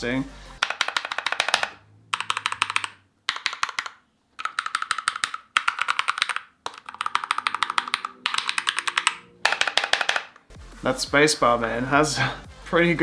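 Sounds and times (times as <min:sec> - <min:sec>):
mechanical keyboard typing: 0:00.6 - 0:10.5.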